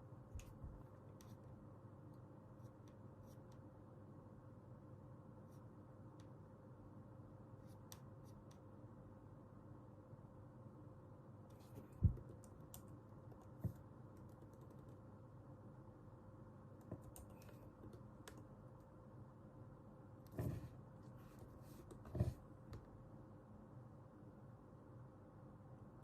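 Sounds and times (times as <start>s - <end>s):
faint room hum: 0.0s - 26.0s
computer keyboard keystrokes: 14.1s - 15.0s, 16.8s - 18.5s.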